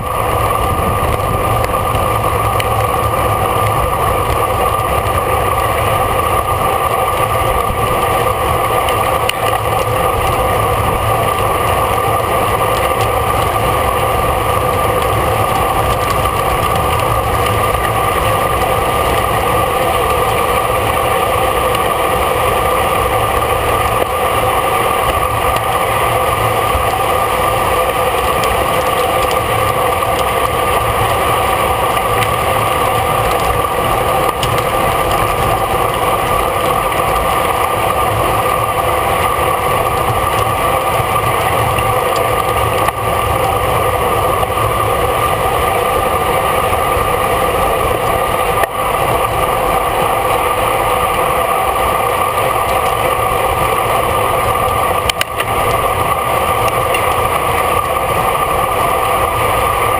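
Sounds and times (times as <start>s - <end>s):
bicycle road noise: 0.0s - 59.9s
constant hum: 0.0s - 59.9s
wind noise: 0.0s - 59.9s.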